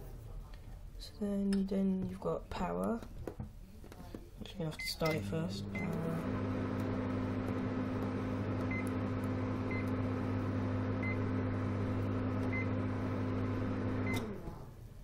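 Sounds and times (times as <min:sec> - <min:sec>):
microwave oven humming: 0:05.1 - 0:14.8.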